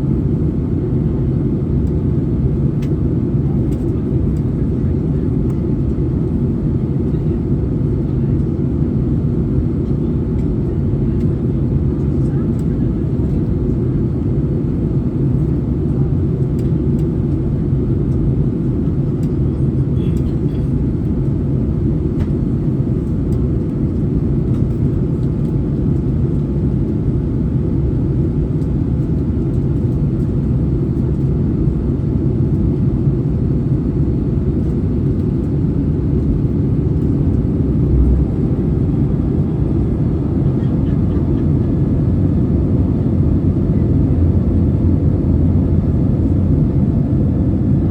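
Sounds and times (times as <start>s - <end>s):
jet engines droning: 32.2s - 47.9s.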